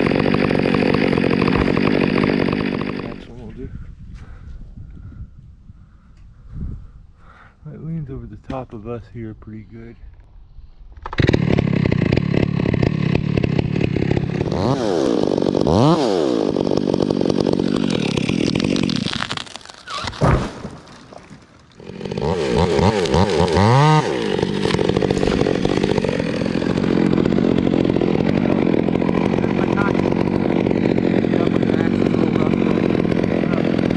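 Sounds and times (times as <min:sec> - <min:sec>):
chainsaw revving: 0:00.0 - 0:03.4, 0:11.1 - 0:33.9.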